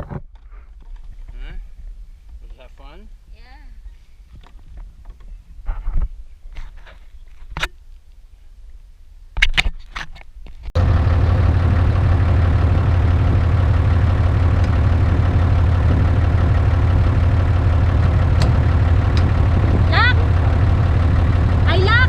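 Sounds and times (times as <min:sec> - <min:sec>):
engine running with low hum: 0:10.8 - 0:22.0.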